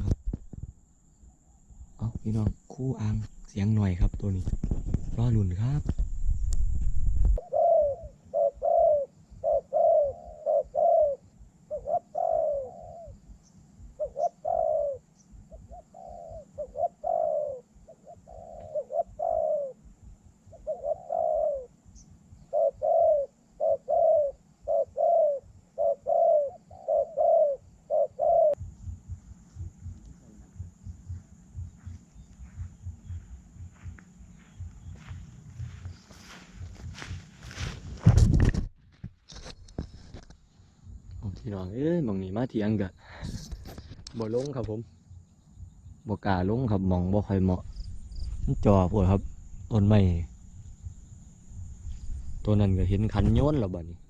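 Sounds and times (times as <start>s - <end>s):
doves cooing: 7.4s - 37.7s.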